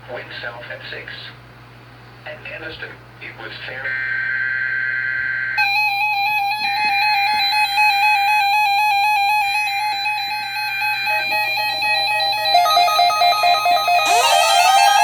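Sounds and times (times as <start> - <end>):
electronic melody: 10.2 - 15.0
two-tone digital data bursts: 12.6 - 15.0.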